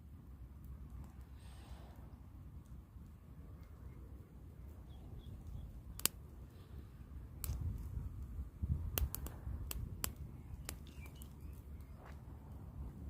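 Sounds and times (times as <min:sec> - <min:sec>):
campfire crackling: 0:00.0 - 0:13.0
bird chirping: 0:03.8 - 0:06.0, 0:10.3 - 0:12.1.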